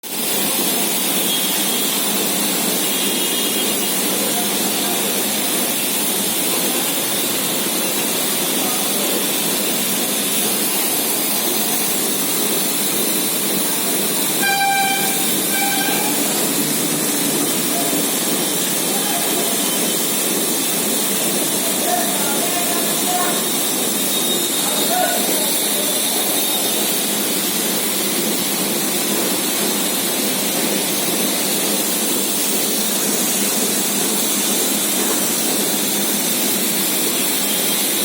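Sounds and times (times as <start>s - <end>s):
air compressor running: 0.0s - 38.0s
short pitched tones: 14.3s - 17.2s.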